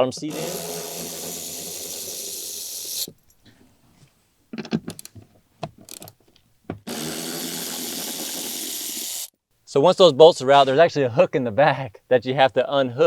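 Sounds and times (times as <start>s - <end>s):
cordless power ratchet running: 0.0s - 3.1s, 6.9s - 9.3s.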